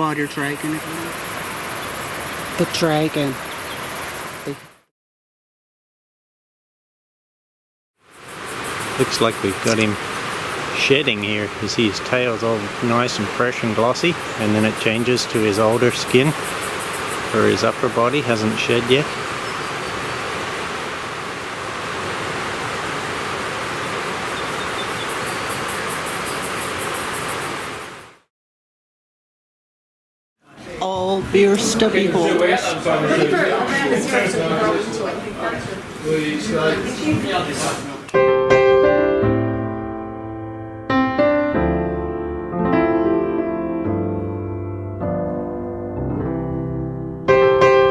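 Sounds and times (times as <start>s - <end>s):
fast high ticking: 0.0s - 4.8s
steady outdoor noise: 0.0s - 4.9s, 8.0s - 28.2s, 30.4s - 38.2s
slow piano chords: 38.2s - 47.9s.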